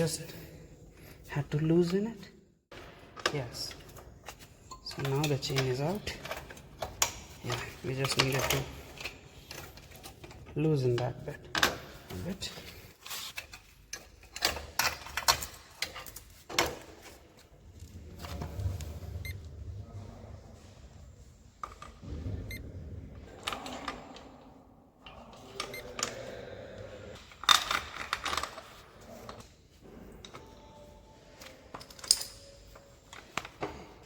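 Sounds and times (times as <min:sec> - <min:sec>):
metal tools clinking and clanking: 0:02.8 - 0:17.2, 0:30.0 - 0:34.0.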